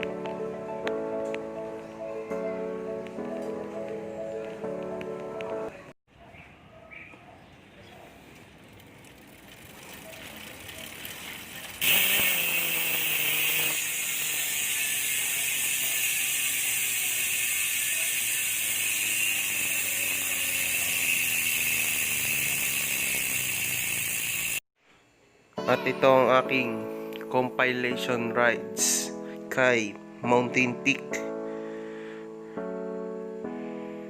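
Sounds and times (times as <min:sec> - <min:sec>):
bicycle freehub clicking buzz: 0:08.7 - 0:24.6.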